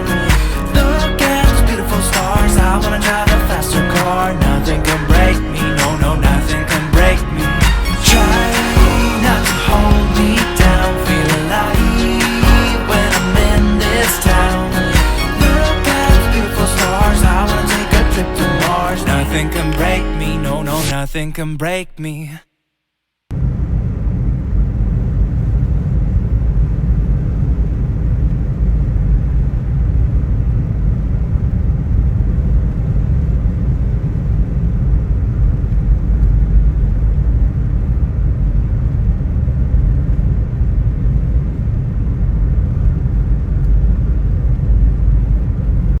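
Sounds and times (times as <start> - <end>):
loud low rumble: 0.0 - 21.8.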